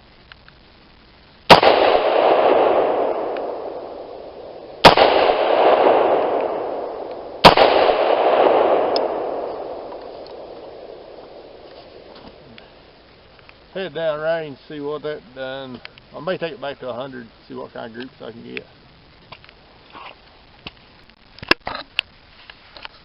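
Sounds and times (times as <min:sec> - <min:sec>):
rifle shots with rolling echo: 0:01.5 - 0:13.0.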